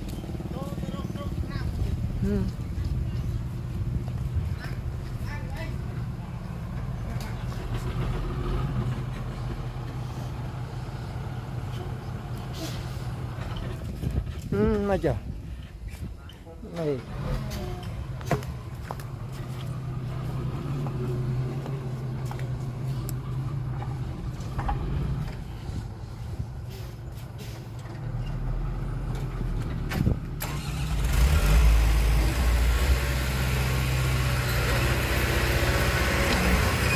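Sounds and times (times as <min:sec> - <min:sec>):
diesel engine humming: 0:00.0 - 0:14.5, 0:16.9 - 0:36.9.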